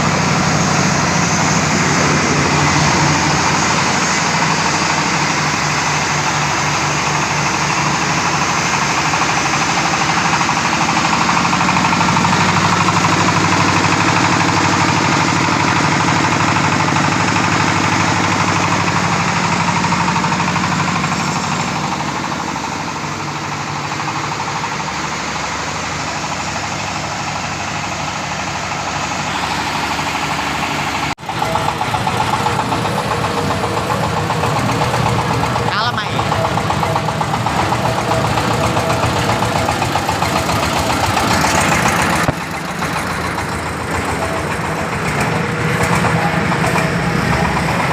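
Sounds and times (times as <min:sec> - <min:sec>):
corn sheller rattling hiss: 0:00.0 - 0:47.8
engine drone: 0:00.0 - 0:47.9.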